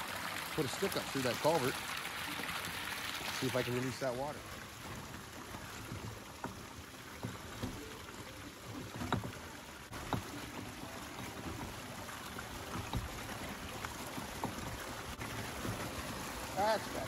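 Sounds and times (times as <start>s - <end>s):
water rushing through culvert: 0.0s - 17.0s
stick knocking and splashing: 8.8s - 11.8s.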